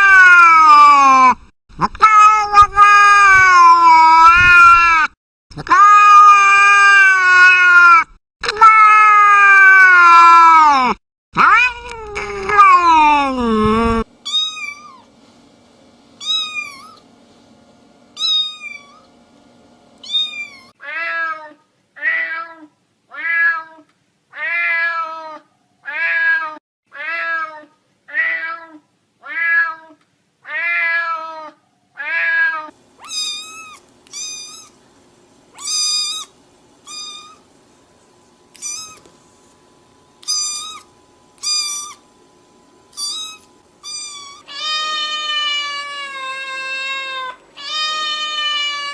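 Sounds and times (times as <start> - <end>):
cat meowing: 2.0 - 5.1, 11.4 - 13.4, 14.3 - 15.0, 16.2 - 17.0, 18.2 - 19.0, 20.0 - 23.8, 24.4 - 34.8, 35.6 - 37.4, 38.5 - 39.1, 40.2 - 42.0, 42.9 - 48.9.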